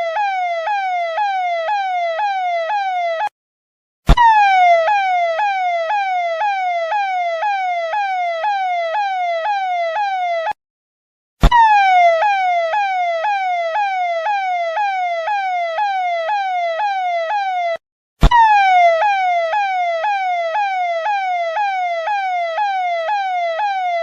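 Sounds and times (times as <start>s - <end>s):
police siren yelping: 0.0s - 3.3s, 4.1s - 10.6s, 11.4s - 24.0s.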